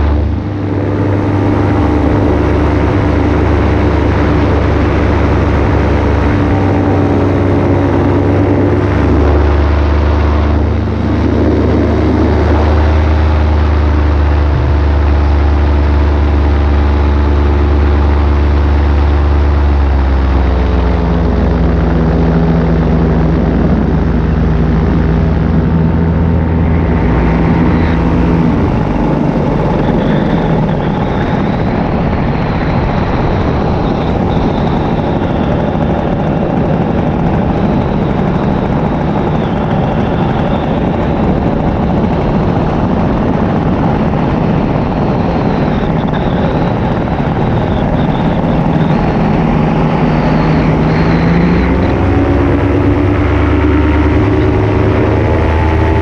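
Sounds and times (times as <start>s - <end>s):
wind rushing: 0.0s - 17.9s, 21.2s - 56.0s
paramotor engine and propeller: 0.0s - 56.0s.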